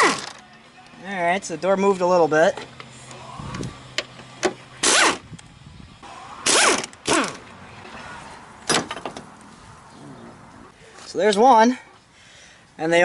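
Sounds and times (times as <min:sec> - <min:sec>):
power tool whirring: 0:04.8 - 0:05.3.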